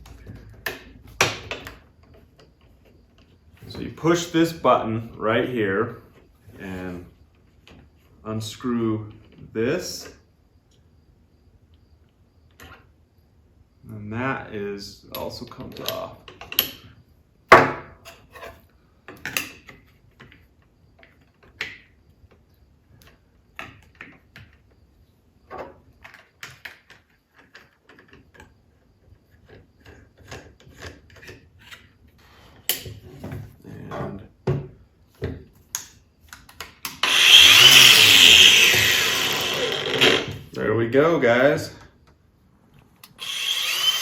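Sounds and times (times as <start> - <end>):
angle grinder spinning up: 36.9 - 40.5, 43.0 - 44.0.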